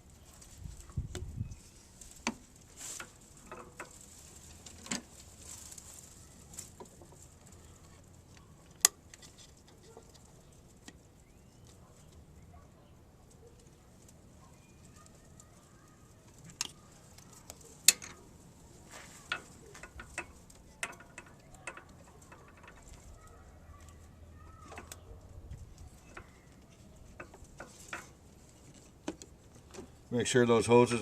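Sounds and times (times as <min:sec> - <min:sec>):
small clicks and knocks: 0:02.0 - 0:11.0, 0:16.2 - 0:18.3, 0:18.9 - 0:30.0.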